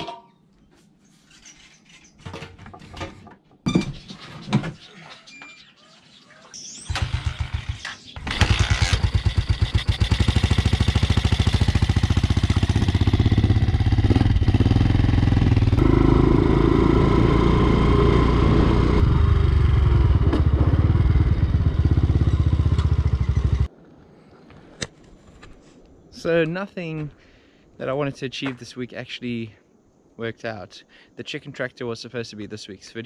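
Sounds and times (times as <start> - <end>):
motorcycle engine starting and running: 6.8 - 23.7.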